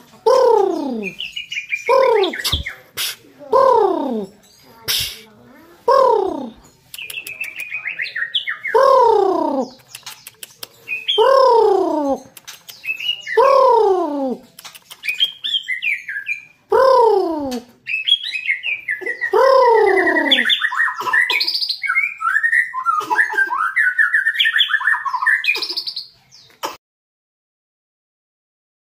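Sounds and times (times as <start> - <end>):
high bird chattering: 0.2 - 26.5
fast high bird chirps: 0.6 - 5.3.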